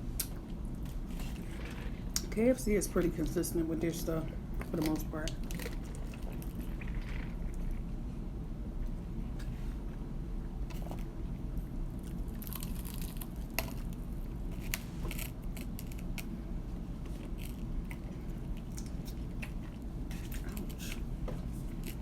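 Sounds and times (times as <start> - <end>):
chewing and biting food: 5.4 - 7.9, 12.0 - 16.3
crisp crunches: 12.0 - 16.3.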